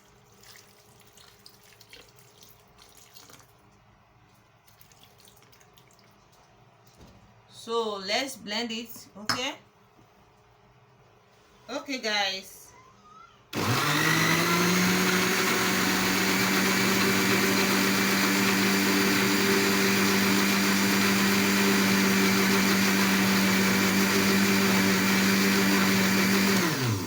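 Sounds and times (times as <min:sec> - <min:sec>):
electric blender running: 0:13.5 - 0:27.0.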